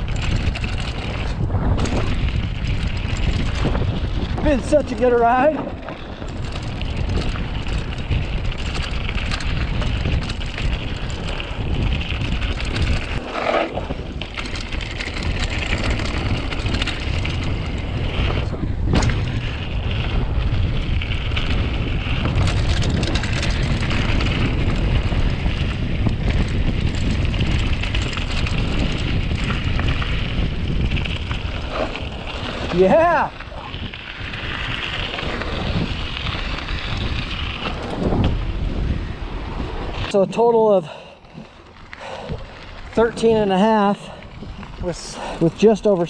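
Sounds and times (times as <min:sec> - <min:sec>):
bike rumbling and rattling on dirt: 0:00.0 - 0:46.0
wind buffeting microphone: 0:00.0 - 0:46.0.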